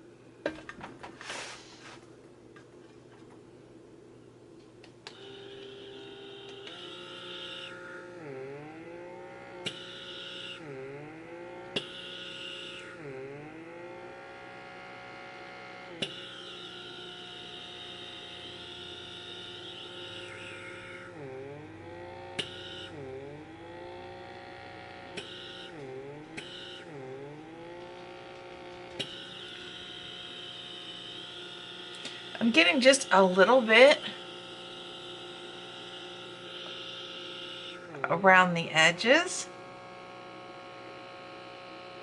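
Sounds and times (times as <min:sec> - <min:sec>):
small suction motor whirring: 0:05.1 - 0:42.0.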